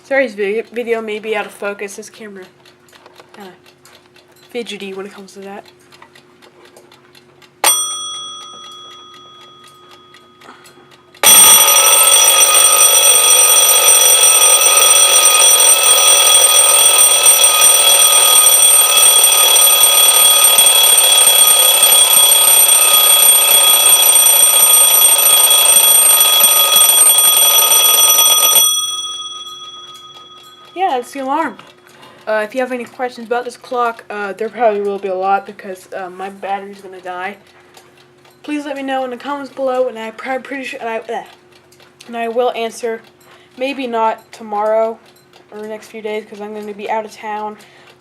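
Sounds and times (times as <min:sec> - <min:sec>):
clock ticking: 0:00.0 - 0:48.0
alarm clock bell ringing: 0:07.6 - 0:32.2.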